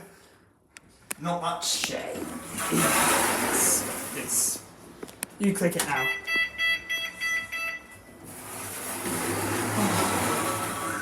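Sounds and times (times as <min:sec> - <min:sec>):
lift beeper rapid beeps: 0:06.0 - 0:08.2.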